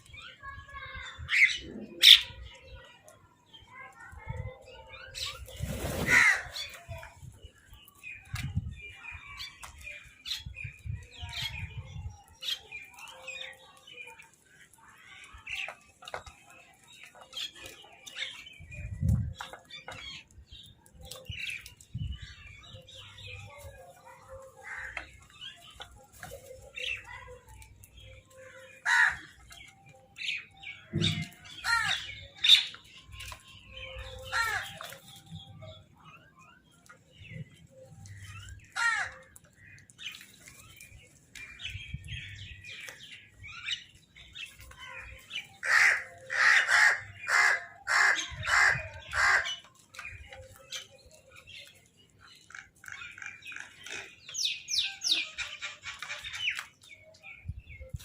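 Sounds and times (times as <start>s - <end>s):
crows cawing: 28.8s - 29.3s, 38.8s - 39.2s, 45.6s - 49.5s.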